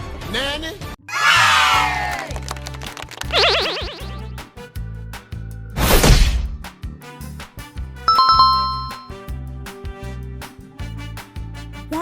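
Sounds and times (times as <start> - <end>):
background music with bass line: 3.3 - 12.0.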